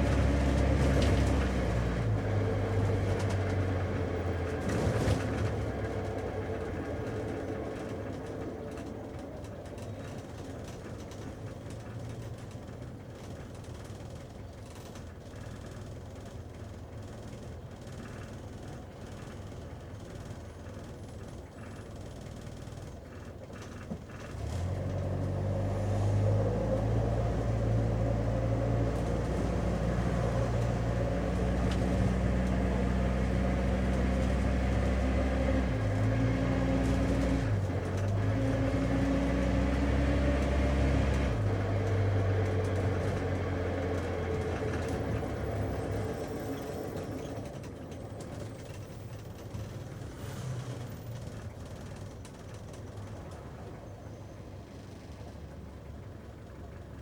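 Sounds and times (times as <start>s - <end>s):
car engine and road rumble: 0.0s - 57.0s.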